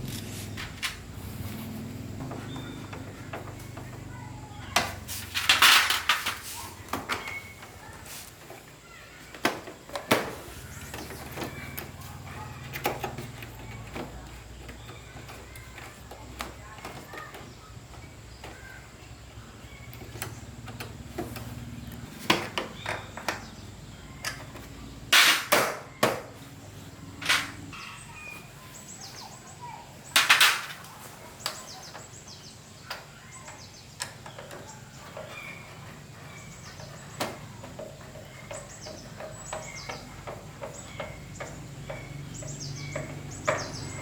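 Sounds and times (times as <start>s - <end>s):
hand tools clinking on metal: 2.2s - 8.7s, 27.2s - 28.1s.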